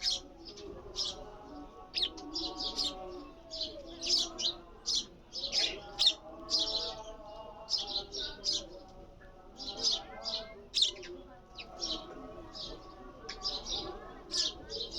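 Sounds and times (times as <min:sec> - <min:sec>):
sparrow chirping: 0:00.0 - 0:14.9.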